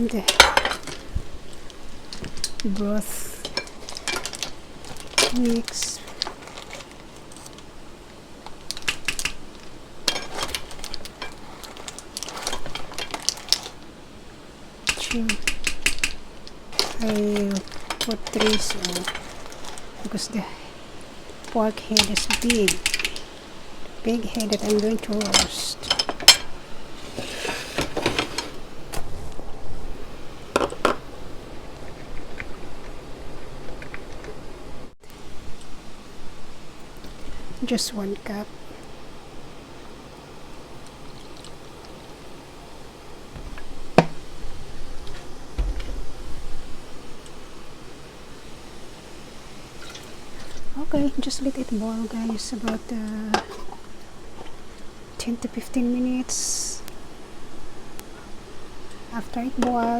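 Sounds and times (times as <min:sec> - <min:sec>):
kitchen utensils clicking and tapping: 0:00.0 - 0:07.7, 0:08.4 - 0:13.9, 0:14.8 - 0:20.4, 0:21.3 - 0:23.5, 0:24.1 - 0:28.6, 0:49.8 - 0:54.6.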